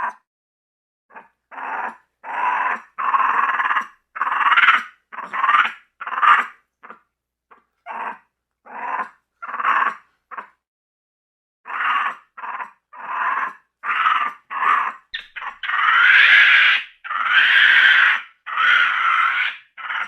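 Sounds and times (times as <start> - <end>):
raspy creature calls: 11.7 - 20.0.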